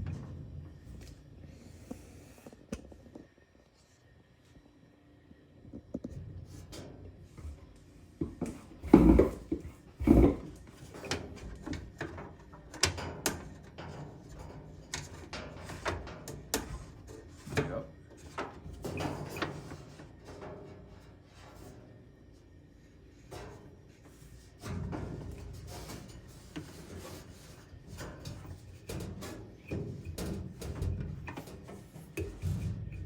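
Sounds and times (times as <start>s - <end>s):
hands clattering on dryer parts: 8.2s - 21.9s, 23.2s - 33.0s.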